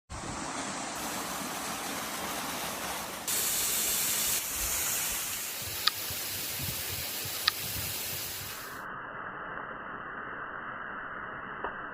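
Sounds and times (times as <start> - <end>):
steady hissing noise: 0.1 - 11.9
sharp click: 7.2 - 7.7.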